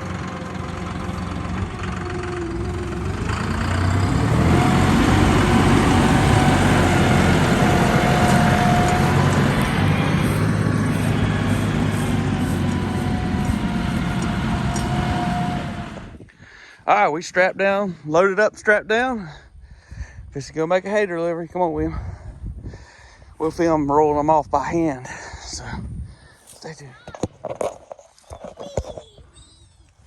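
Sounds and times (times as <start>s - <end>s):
farm vehicle engine running: 0.0s - 16.3s.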